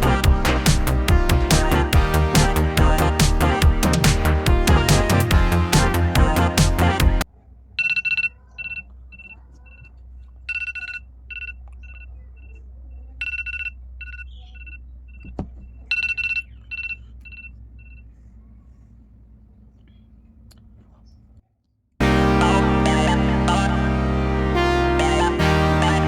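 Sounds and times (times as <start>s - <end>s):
background music: 0.0s - 7.2s, 22.0s - 26.0s
phone alarm beeps: 7.8s - 9.9s, 10.5s - 12.6s, 13.2s - 15.3s, 15.9s - 18.0s.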